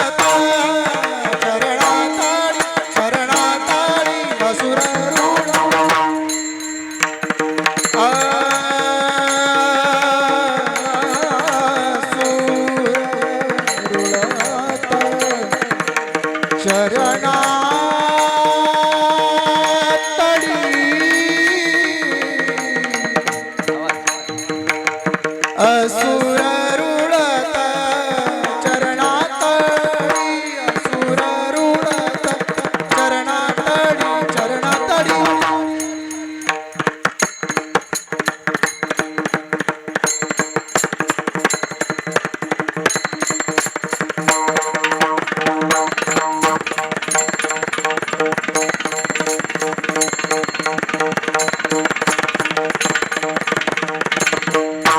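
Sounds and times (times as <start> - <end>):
man singing: 0.0 - 6.4, 7.7 - 36.7
drum strokes: 10.8 - 54.9.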